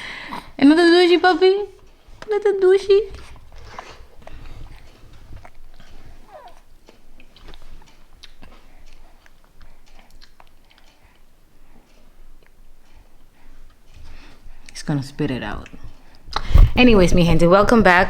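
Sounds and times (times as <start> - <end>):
baby lip smacking while eating: 3.0 - 14.8.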